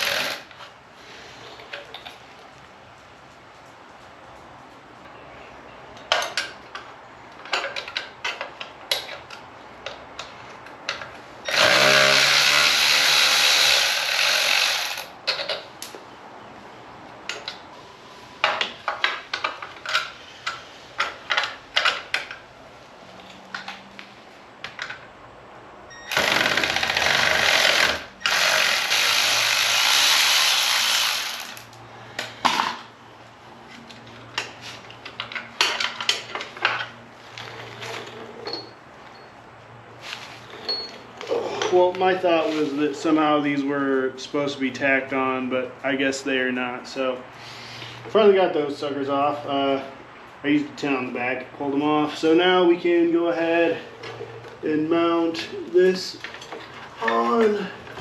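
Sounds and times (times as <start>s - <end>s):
power tool running: 0.0s - 0.5s, 11.5s - 15.1s, 26.1s - 31.7s
metal tools clicking and clanking: 6.0s - 11.7s, 14.9s - 15.9s, 18.4s - 22.4s, 34.3s - 39.3s, 40.5s - 41.8s.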